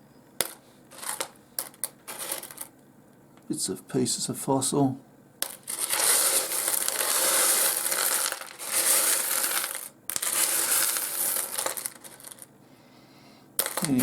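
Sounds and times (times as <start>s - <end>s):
stones clattering in a tray: 0.4s - 2.7s, 5.4s - 12.5s, 13.6s - 14.0s.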